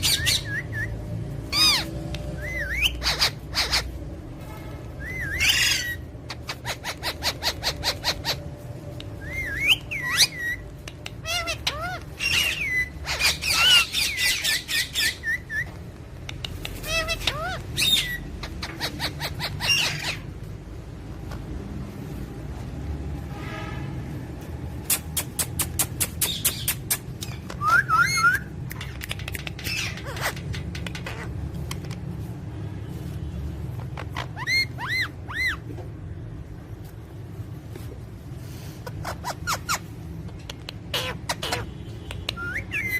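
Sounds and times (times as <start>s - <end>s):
parrot whistling: 0.0s - 3.9s, 5.0s - 6.0s, 9.2s - 10.6s, 27.5s - 28.5s, 34.1s - 35.6s, 42.4s - 42.9s
parrots whistling: 0.0s - 4.0s, 5.0s - 15.8s, 16.5s - 20.3s, 24.8s - 28.8s, 33.8s - 35.7s, 38.8s - 39.9s, 40.5s - 42.9s
parrots squawking: 0.0s - 4.2s, 4.9s - 20.5s, 24.8s - 32.0s, 33.7s - 35.8s, 38.6s - 42.9s
sharp clicks: 28.6s - 32.0s.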